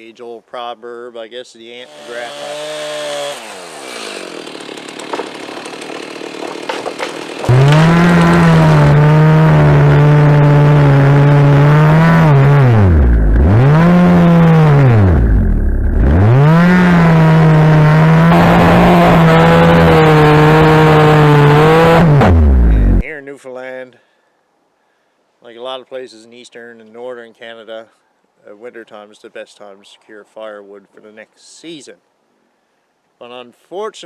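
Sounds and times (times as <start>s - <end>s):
two-stroke engine revving: 1.8s - 23.0s.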